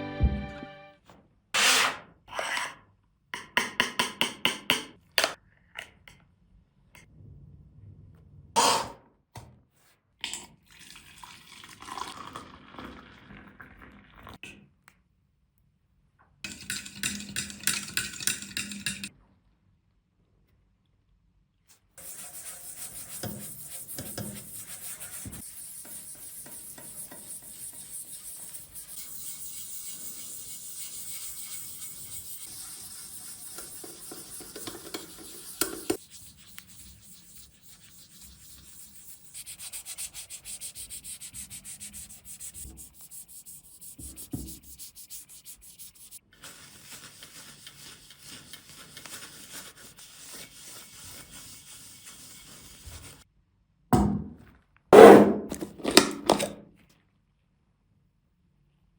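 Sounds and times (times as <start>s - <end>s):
hand sanding: 22.0s - 53.2s.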